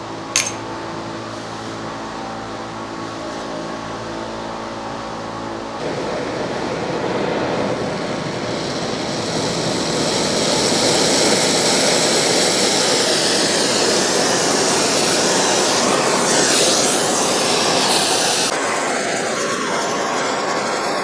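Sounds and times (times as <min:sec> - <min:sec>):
torch flame roaring: 0:05.8 - 0:21.0.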